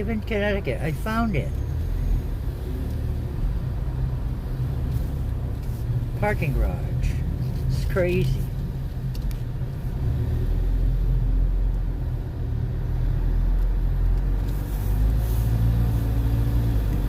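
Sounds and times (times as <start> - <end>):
car engine and road rumble: 0.0 - 17.0.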